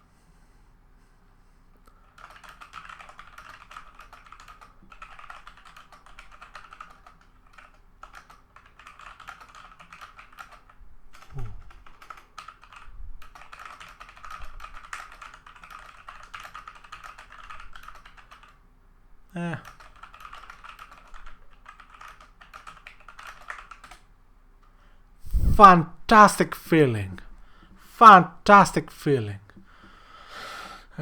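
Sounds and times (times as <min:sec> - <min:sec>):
soft keyboard keystroke clicks: 0:19.6 - 0:24.1.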